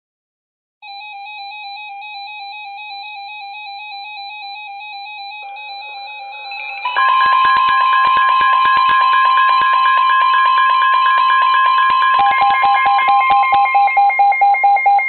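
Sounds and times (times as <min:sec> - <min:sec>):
warbling electronic alarm tone: 0:00.8 - 0:15.0
second quieter alarm tone: 0:04.9 - 0:15.0.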